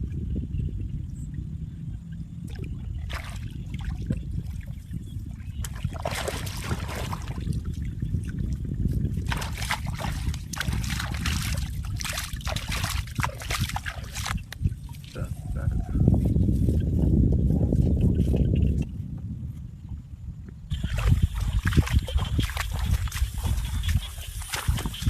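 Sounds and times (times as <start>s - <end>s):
steady low rumble: 0.0s - 25.0s
water splashing and trickling: 2.4s - 15.6s, 20.7s - 25.0s.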